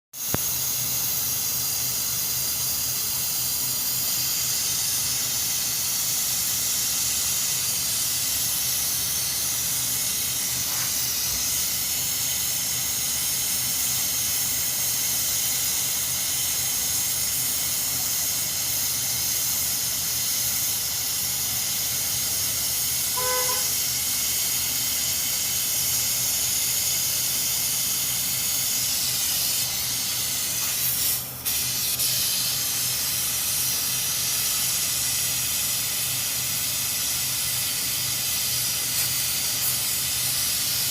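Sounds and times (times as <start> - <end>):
pressurised gas hissing: 0.2 - 40.9
short horn-like beep: 23.1 - 23.8.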